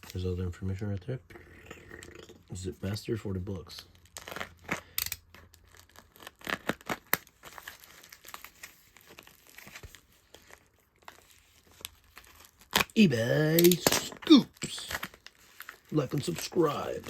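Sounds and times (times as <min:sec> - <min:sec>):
packaging crinkling and rustling: 0:03.9 - 0:13.0, 0:14.9 - 0:17.0.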